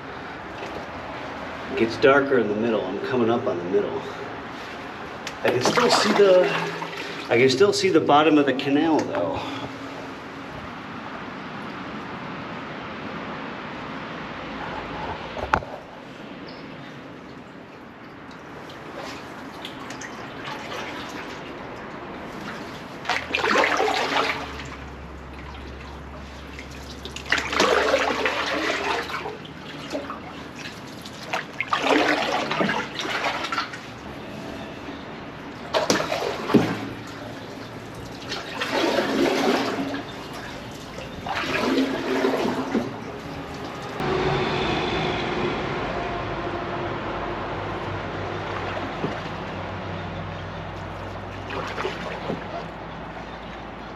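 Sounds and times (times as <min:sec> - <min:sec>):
canoe paddle splashing in water: 0:04.5 - 0:07.6, 0:18.4 - 0:34.8, 0:35.5 - 0:44.0, 0:50.7 - 0:53.6.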